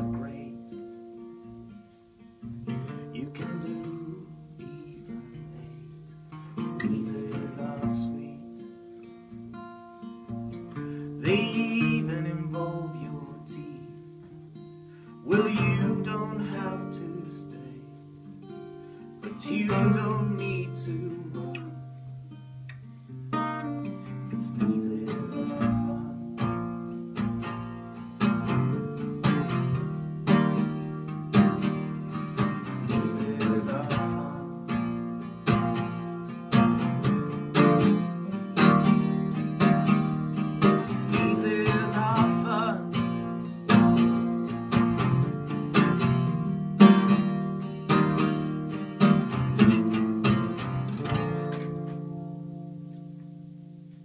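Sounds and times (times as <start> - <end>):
acoustic guitar strumming: 0.0 - 54.0.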